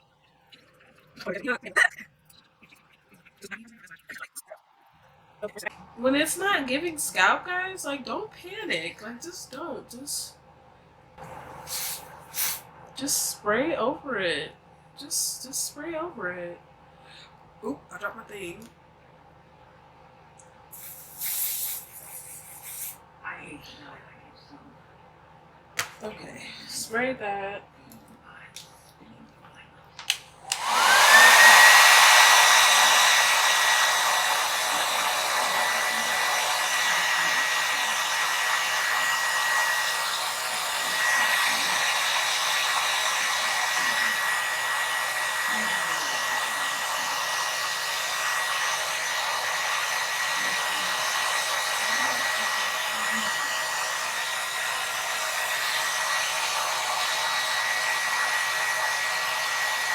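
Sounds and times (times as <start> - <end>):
hair dryer switch clicks: 30.0 - 31.6
hair dryer motor whine: 30.4 - 59.9.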